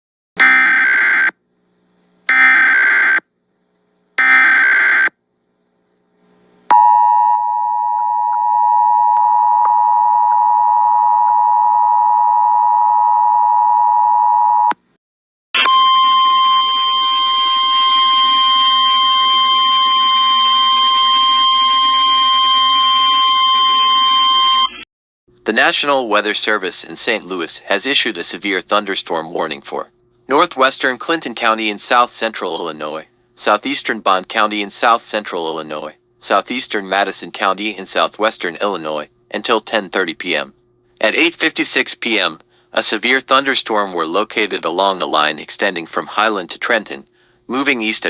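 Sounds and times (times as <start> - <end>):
warning alarm tone: 2.3 - 3.2, 4.2 - 5.1, 6.7 - 14.7, 15.6 - 24.8
two-tone attention signal: 6.7 - 14.7, 15.6 - 24.8
screeching data bursts: 16.7 - 24.7.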